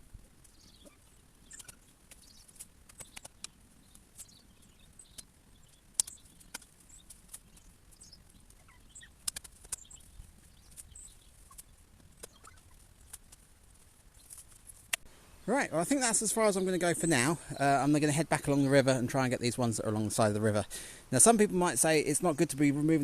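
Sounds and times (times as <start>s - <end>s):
rustling of plants pulled up: 0.0s - 23.0s
sharp clicks of digging plants: 0.4s - 4.4s, 5.0s - 7.8s, 8.4s - 15.1s
high bird chirps: 4.2s - 12.8s.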